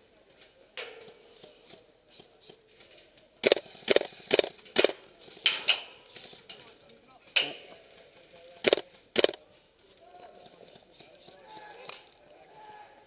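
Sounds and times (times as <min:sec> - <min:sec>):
airsoft gun shots: 0:03.4 - 0:05.9, 0:08.6 - 0:09.4.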